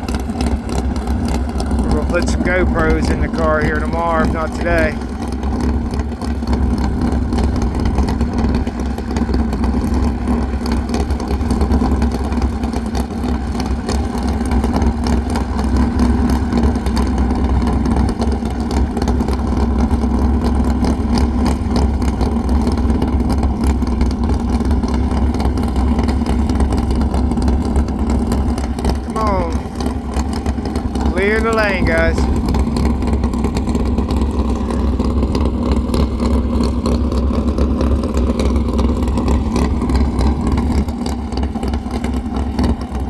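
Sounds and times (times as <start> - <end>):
engine idling: 0.0 - 43.0.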